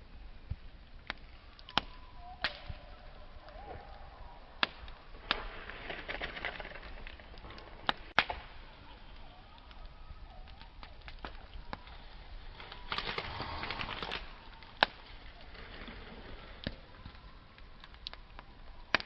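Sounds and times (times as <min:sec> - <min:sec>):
campfire crackling: 0:00.0 - 0:19.0
fire popping: 0:00.0 - 0:19.0
faint thin whistle: 0:01.4 - 0:04.9.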